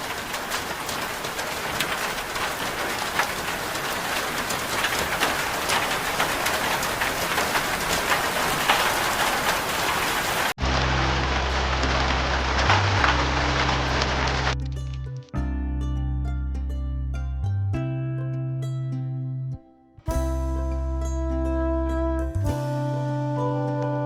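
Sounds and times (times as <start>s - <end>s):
rain falling: 0.0s - 15.1s
music with low tones: 10.6s - 24.0s.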